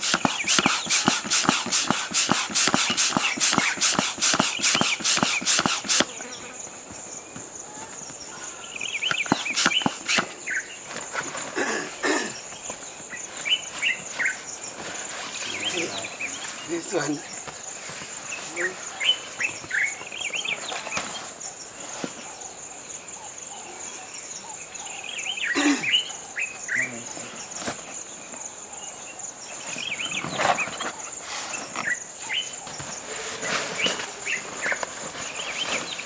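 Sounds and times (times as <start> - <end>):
high-pitched insect drone: 0.0 - 6.7, 9.1 - 10.5
birds chirping: 0.0 - 36.0.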